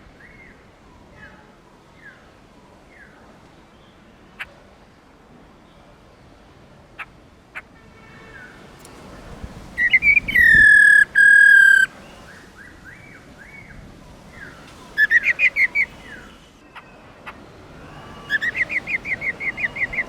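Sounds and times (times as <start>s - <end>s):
bird calling and whistling: 9.8s - 12.0s, 15.0s - 16.9s, 17.9s - 20.0s.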